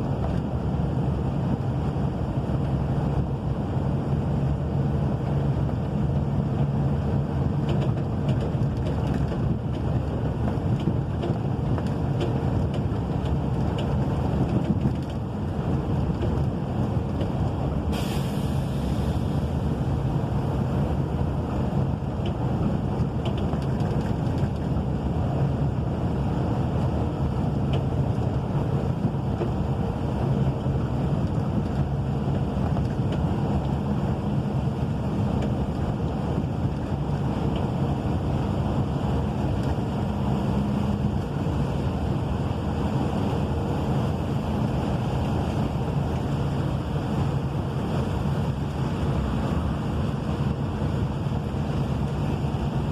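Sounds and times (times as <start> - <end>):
wind rumble on microphone: 0.0 - 52.9
brief hiss: 17.9 - 19.4.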